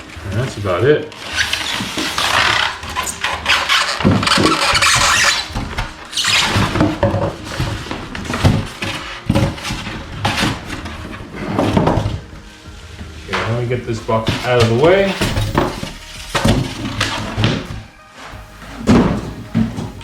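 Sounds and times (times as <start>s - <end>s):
packaging rustling and scraping: 0.0s - 20.0s
squeaks: 1.2s - 8.4s, 13.4s - 18.4s
low thumps: 13.3s - 20.0s.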